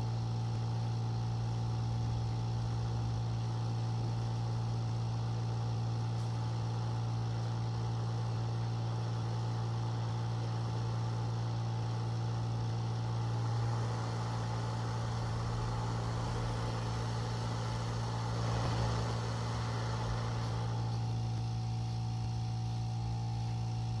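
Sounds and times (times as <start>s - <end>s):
low mechanical hum: 0.0s - 24.0s
hiss: 12.8s - 23.6s.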